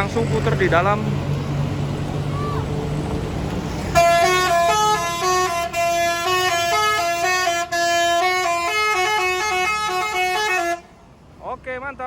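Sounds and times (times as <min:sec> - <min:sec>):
bus musical horn playing tune: 0:03.9 - 0:11.0.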